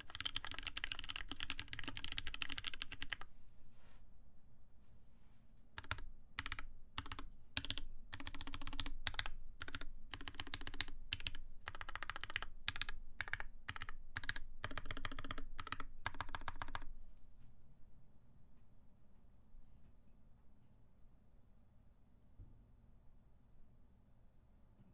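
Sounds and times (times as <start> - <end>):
mechanical keyboard typing: 0.0 - 3.3, 5.8 - 16.9.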